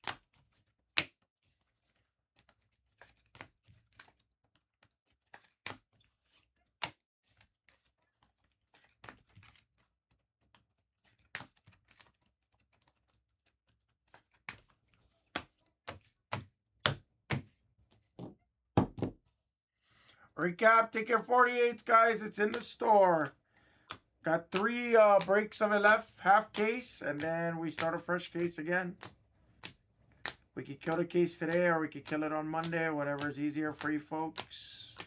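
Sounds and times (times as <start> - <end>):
knocks on table: 18.2 - 19.2
trading cards tapping and clicking: 20.4 - 35.0.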